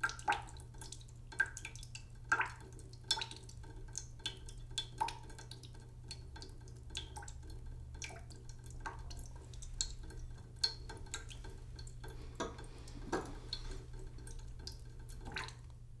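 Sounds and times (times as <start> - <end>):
water dripping into a pot: 0.0 - 16.0.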